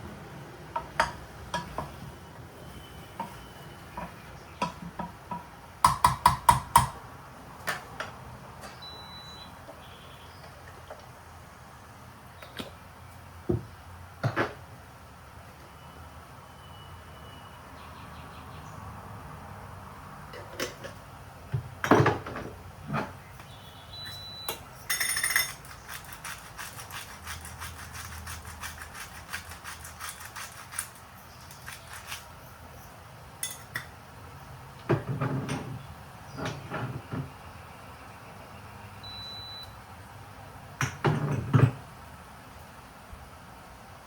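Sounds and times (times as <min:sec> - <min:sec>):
short high electronic beeps: 0:24.0 - 0:24.6
dishes and utensils clinking: 0:24.8 - 0:32.2, 0:33.4 - 0:33.9.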